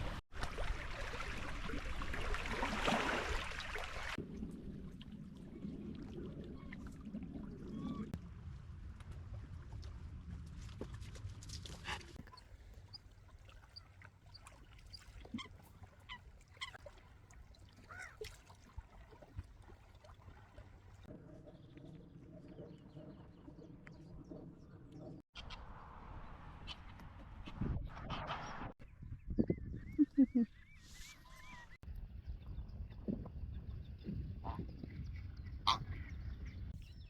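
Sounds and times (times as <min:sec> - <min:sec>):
wind rumble on microphone: 0:03.8 - 0:13.0, 0:21.0 - 0:37.0.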